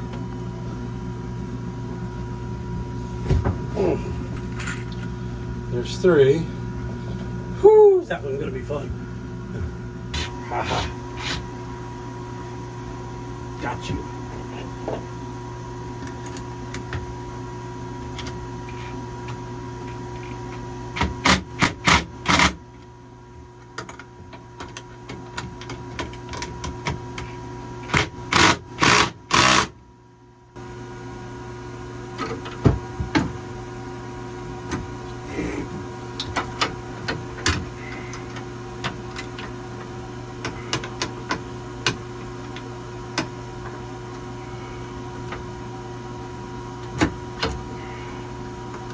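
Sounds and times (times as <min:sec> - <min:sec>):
steady hum: 0:00.0 - 0:29.6, 0:30.4 - 0:48.9
tools and metal hardware clattering: 0:04.4 - 0:05.1, 0:36.2 - 0:38.4.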